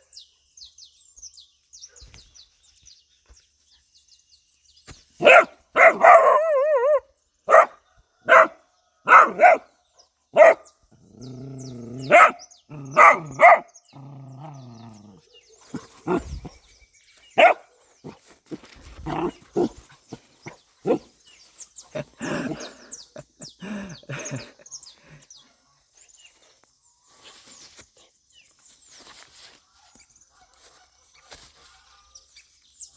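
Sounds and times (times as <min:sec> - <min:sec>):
dog barking: 0:05.2 - 0:09.7, 0:10.3 - 0:10.7, 0:11.9 - 0:13.7, 0:15.7 - 0:16.3, 0:17.4 - 0:18.2, 0:20.4 - 0:21.1
dog growling: 0:10.4 - 0:16.6, 0:17.4 - 0:21.1.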